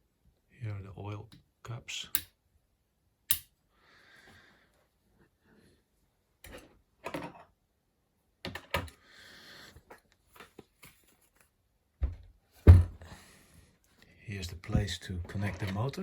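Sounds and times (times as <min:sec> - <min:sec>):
heavy knocks: 0:12.0 - 0:13.1.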